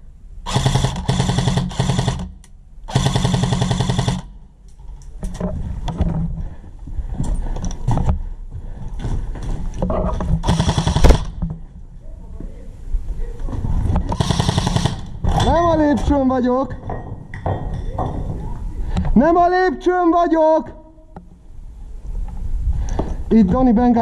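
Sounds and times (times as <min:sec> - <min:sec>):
airsoft gun firing full-auto: 0:00.5 - 0:04.4, 0:10.4 - 0:11.4, 0:14.1 - 0:15.2.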